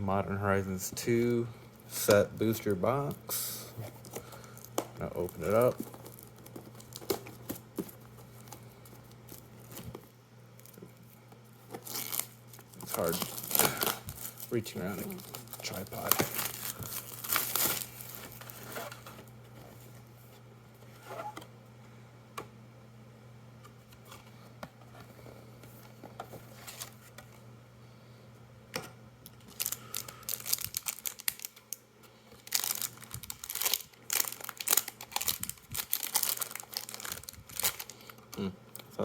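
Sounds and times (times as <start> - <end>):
steady low hum: 0.0 - 39.0
plastic wrapping crinkling and tearing: 3.8 - 11.1, 11.7 - 19.3, 29.4 - 31.8, 32.4 - 38.5.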